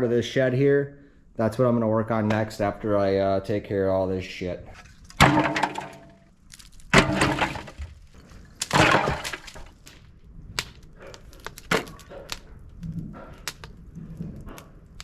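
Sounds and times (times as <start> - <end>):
sharp knocks and clatter: 5.1 - 6.2, 6.9 - 8.0
loud crashing cracking bursts: 6.8 - 8.0.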